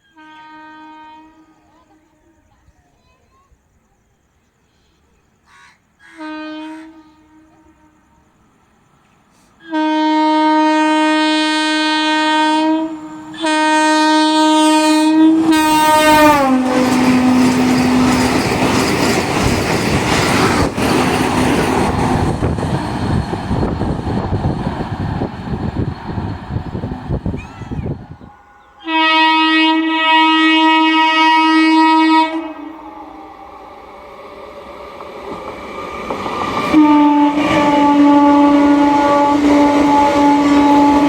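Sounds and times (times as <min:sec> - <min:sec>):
train horn blasts: 0:00.0 - 0:02.4, 0:06.2 - 0:08.4, 0:09.6 - 0:18.4, 0:27.2 - 0:33.9, 0:36.6 - 0:41.0
train wheels clattering on rail: 0:16.1 - 0:27.5, 0:34.4 - 0:37.9.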